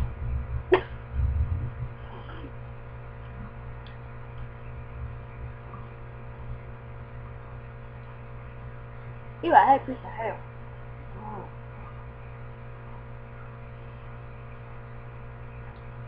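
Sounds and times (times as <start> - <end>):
low bumps: 0.0 - 2.5
steady electrical hum: 0.0 - 16.0.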